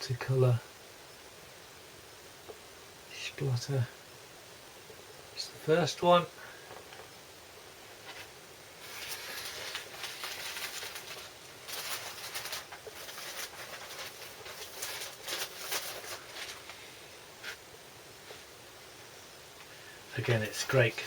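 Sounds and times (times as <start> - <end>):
small ticks and brushes: 6.8 - 21.0
vinyl record and sleeve rustling: 7.8 - 21.0.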